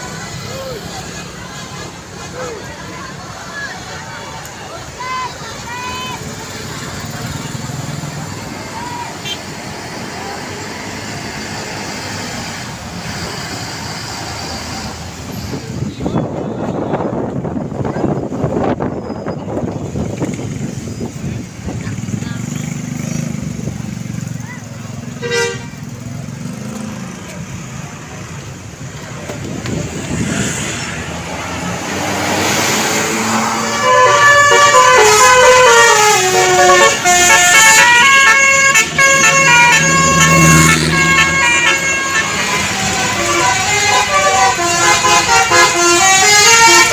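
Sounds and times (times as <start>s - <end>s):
tyres hissing on wet road: 0.0s - 15.9s, 26.4s - 37.2s
bus approaching: 0.0s - 46.9s
bus horn playing multi-note tune: 25.2s - 25.8s, 33.4s - 46.9s
vehicle passing close: 25.8s - 34.8s, 36.1s - 46.9s.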